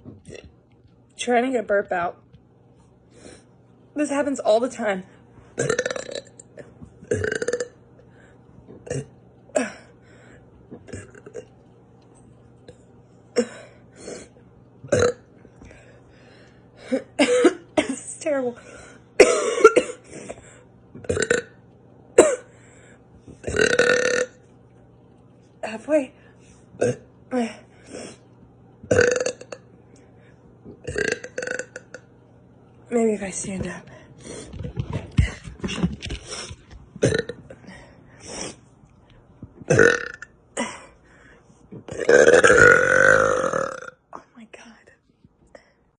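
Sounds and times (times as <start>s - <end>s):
girl burping: 5.6s - 6.4s, 7.0s - 7.8s, 8.8s - 9.9s, 14.9s - 15.3s, 21.0s - 21.6s, 23.4s - 24.4s, 28.9s - 29.6s, 30.8s - 32.0s, 37.0s - 37.5s, 39.7s - 40.9s, 41.8s - 44.0s.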